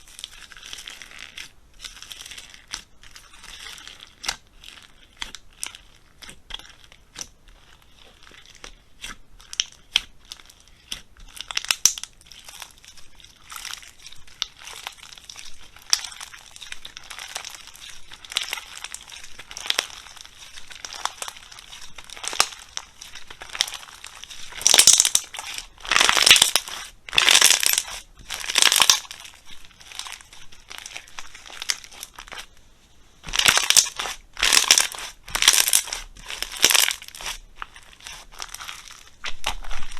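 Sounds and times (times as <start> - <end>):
slime crackling when squeezed: 0.0 - 32.6, 33.2 - 39.9
crunching slime presses: 0.2 - 32.5, 33.2 - 39.9.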